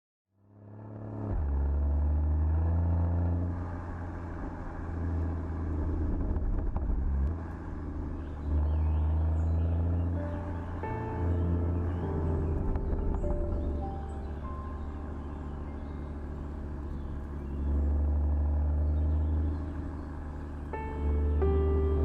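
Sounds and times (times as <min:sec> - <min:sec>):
car engine and exhaust: 0:00.3 - 0:22.0.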